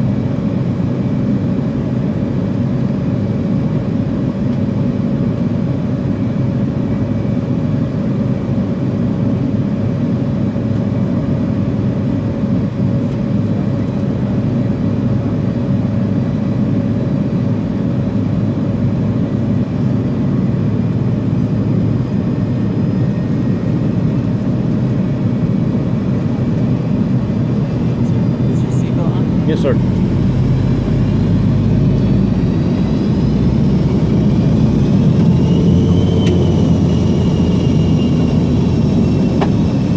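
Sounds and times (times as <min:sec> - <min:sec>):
jet engine cabin drone: 0:00.0 - 0:39.9
thin steady whine: 0:21.4 - 0:39.9.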